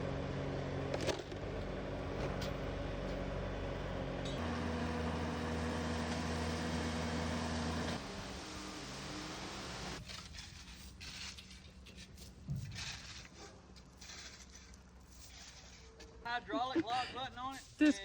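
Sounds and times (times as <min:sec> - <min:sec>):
heavy machine engine running: 0:00.0 - 0:10.0.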